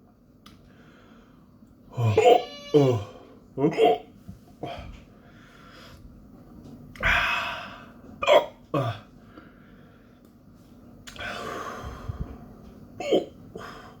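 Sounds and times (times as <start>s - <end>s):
man hiccuping: 1.9s - 4.1s, 8.2s - 9.1s, 13.0s - 13.4s.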